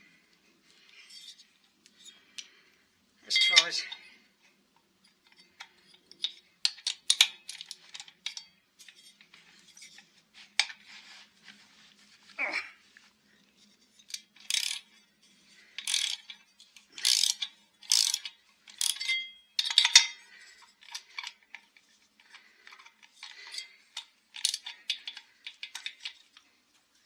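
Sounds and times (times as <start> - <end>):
metal tools clicking and scraping: 0.9 - 2.6, 3.3 - 4.2, 4.8 - 10.9, 13.6 - 27.0
ringing metal clink: 3.3 - 4.1, 18.8 - 20.2.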